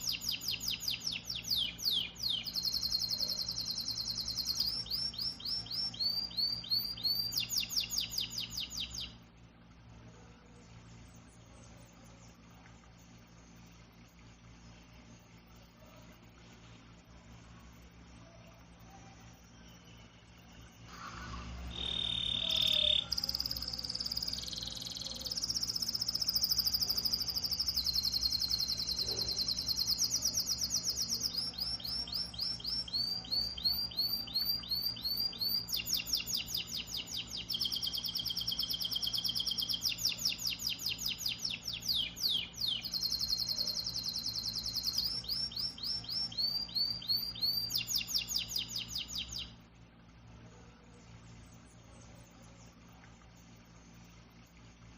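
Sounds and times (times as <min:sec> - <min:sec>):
songbird singing fast trills: 0:00.0 - 0:09.2, 0:18.9 - 0:49.6
low steady hum: 0:00.0 - 0:54.9.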